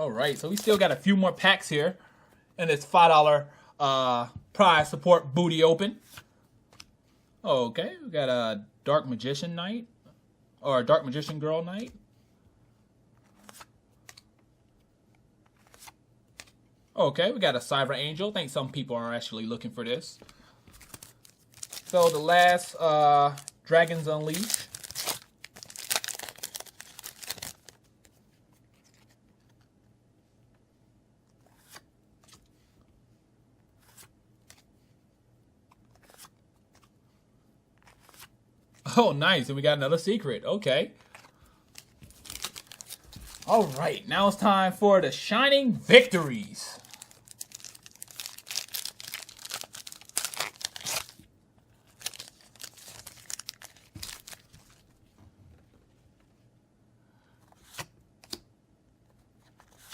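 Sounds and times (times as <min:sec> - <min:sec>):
foil wrapper tearing and crinkling: 0:20.8 - 0:27.8, 0:41.8 - 0:43.8, 0:46.7 - 0:51.2, 0:51.9 - 0:54.8.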